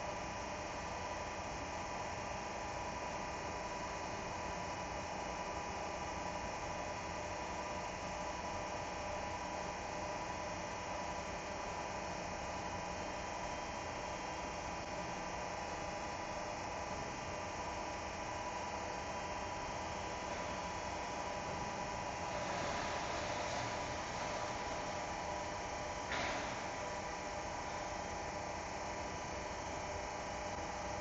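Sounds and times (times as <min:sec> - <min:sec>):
machine tool humming with hiss: 0:18.8 - 0:30.3.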